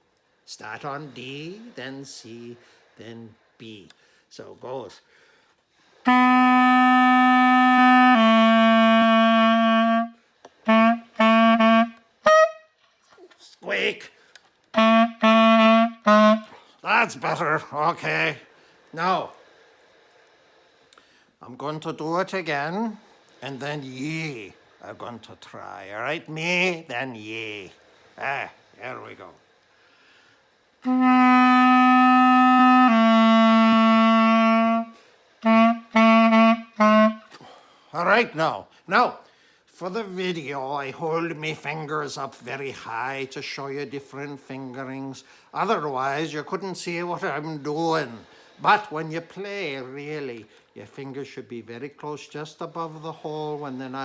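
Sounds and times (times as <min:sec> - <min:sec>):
clarinet playing long notes: 0:06.0 - 0:12.8, 0:14.7 - 0:16.6, 0:30.8 - 0:37.4.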